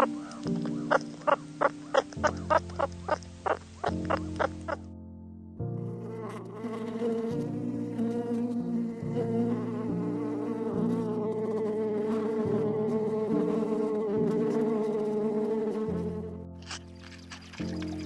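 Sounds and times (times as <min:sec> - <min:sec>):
flying insect buzzing: 0:06.1 - 0:18.0.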